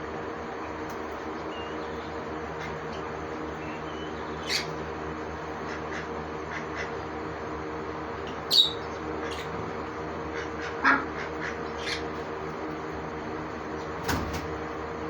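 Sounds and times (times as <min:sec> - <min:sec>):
steady background hum: 0:00.0 - 0:15.0
parrots squawking: 0:03.6 - 0:04.8, 0:08.4 - 0:09.6, 0:10.3 - 0:12.2.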